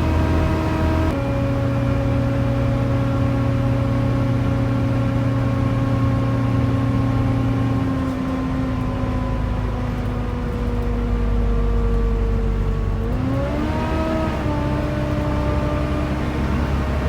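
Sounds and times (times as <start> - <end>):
engine cooling fan whine: 0.0 - 17.0
low rumble of bus: 0.0 - 17.0.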